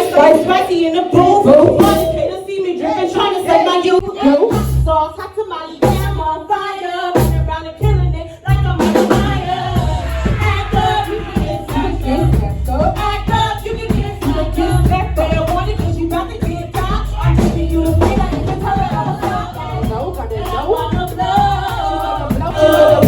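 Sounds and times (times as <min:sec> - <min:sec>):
hip-hop music with vocals: 0:09.5 - 0:23.0.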